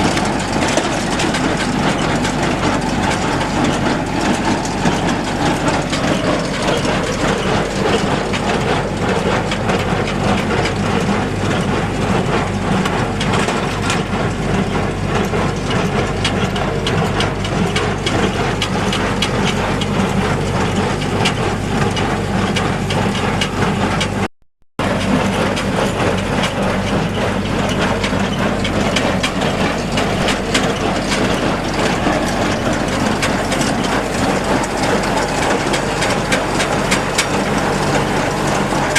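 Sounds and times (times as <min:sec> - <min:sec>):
baler mechanical clatter: 0:00.0 - 0:38.9
tractor engine running: 0:00.0 - 0:38.9.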